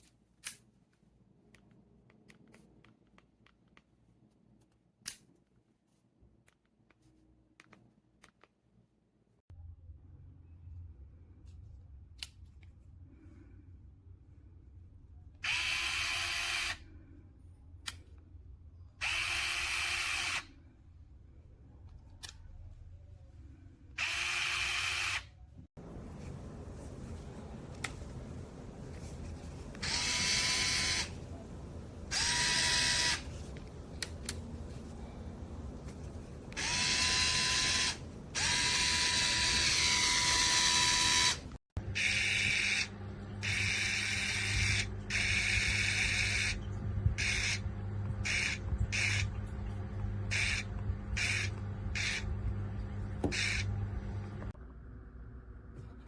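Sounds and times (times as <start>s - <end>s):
electric screwdriver motor spinning: 15.4s - 16.8s, 19.0s - 20.5s, 24.0s - 25.3s, 29.8s - 31.2s, 32.1s - 33.3s, 36.6s - 41.4s, 42.0s - 46.6s, 47.2s - 47.6s, 48.3s - 49.2s, 50.3s - 52.2s, 53.3s - 53.7s.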